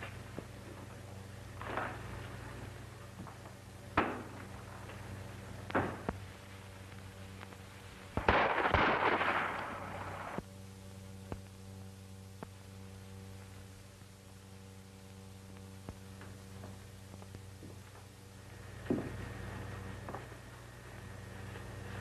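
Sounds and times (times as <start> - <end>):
old film soundtrack hum: 0.0 - 22.0
sharp bang: 8.2 - 10.2.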